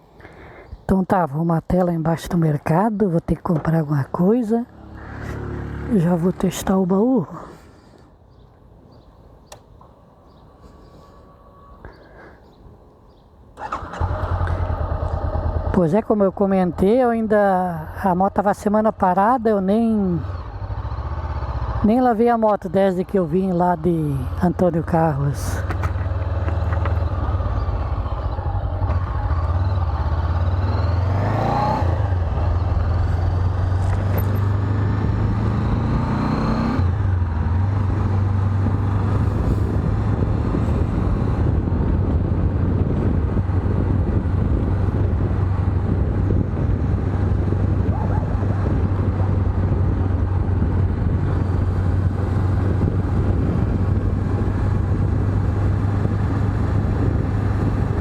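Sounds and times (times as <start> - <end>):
motorcycle engine shifting up gears: 4.7 - 6.5, 13.6 - 16.0, 25.6 - 58.0.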